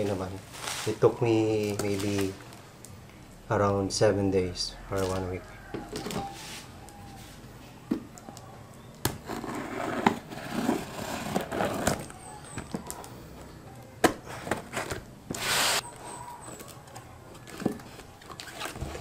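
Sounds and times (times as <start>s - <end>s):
packaging rustling and scraping: 0.0s - 2.6s, 5.0s - 7.4s, 9.2s - 12.9s, 14.2s - 15.8s, 16.4s - 19.0s
short rasping burst: 15.4s - 15.8s.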